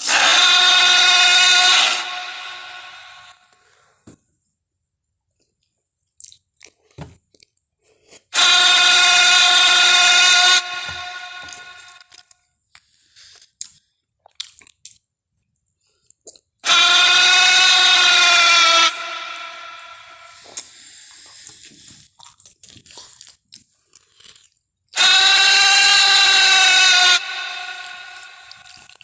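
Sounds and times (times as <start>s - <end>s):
loud creature roars: 0.0s - 3.5s, 8.4s - 12.1s, 16.6s - 20.5s, 25.0s - 28.9s.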